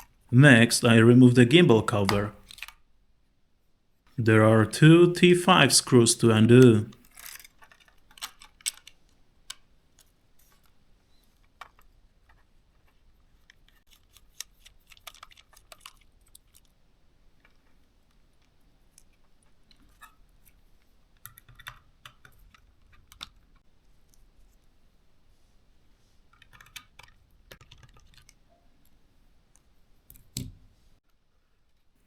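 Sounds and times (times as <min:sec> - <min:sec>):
screwdriver and plastic parts clicking: 0:02.1 - 0:02.8, 0:07.0 - 0:10.2.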